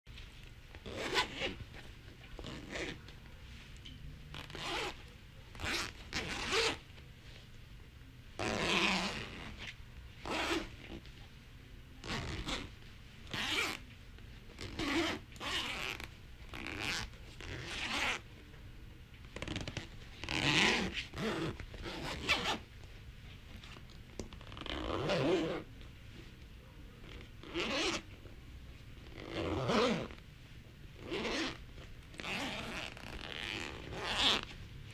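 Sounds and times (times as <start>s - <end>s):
zipper opening and closing: 0.8s - 1.8s, 2.4s - 3.0s, 4.3s - 6.8s, 8.4s - 11.0s, 12.0s - 13.8s, 14.6s - 18.2s, 19.3s - 22.6s, 24.4s - 25.7s, 27.0s - 28.1s, 29.0s - 30.2s, 31.0s - 34.6s.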